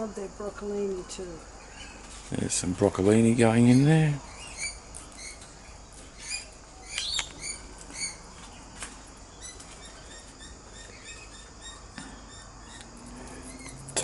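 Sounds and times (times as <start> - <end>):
parrots chirping softly: 0.8 - 14.0
sharp clicks: 6.9 - 7.4.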